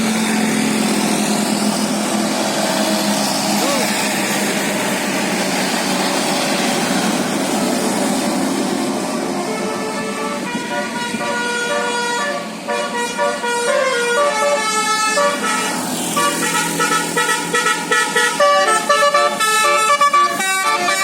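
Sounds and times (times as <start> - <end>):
musical air horn melody: 9.1 - 21.0.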